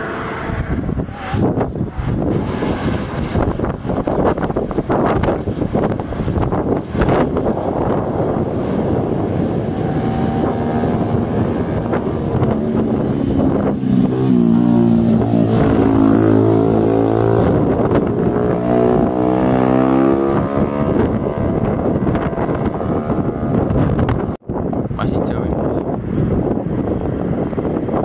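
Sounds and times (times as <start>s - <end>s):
airliner engine drone: 0.0s - 28.0s
wind buffeting microphone: 0.0s - 28.0s.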